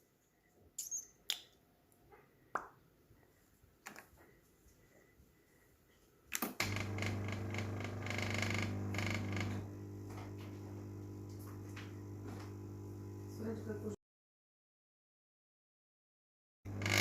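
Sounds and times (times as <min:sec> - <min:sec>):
water pump humming and rattling: 0:06.6 - 0:13.5, 0:16.7 - 0:17.0.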